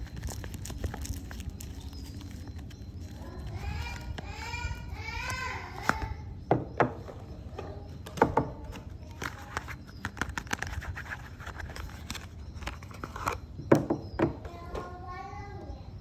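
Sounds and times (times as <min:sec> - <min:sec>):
packaging clicks and crackles: 0:00.0 - 0:06.2, 0:08.0 - 0:13.5.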